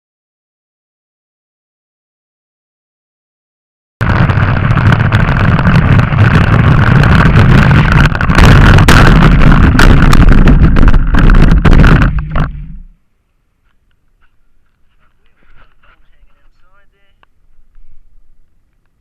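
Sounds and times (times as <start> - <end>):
low rumble: 4.0 - 13.0
wind buffeting microphone: 4.0 - 13.0.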